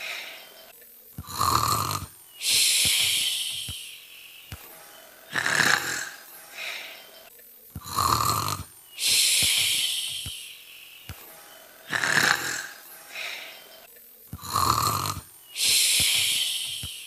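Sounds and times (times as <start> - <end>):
imitated rasping snores: 1.2 - 3.8, 5.2 - 6.9, 7.8 - 10.4, 11.8 - 13.6, 14.4 - 17.0
hissing out-breath: 1.2 - 4.6, 5.2 - 7.1, 7.8 - 11.2, 11.8 - 13.8, 14.4 - 17.0.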